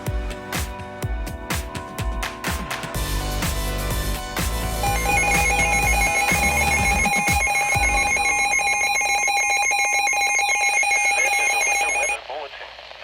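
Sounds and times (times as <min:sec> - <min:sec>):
warbling electronic alarm tone: 0:04.8 - 0:12.2.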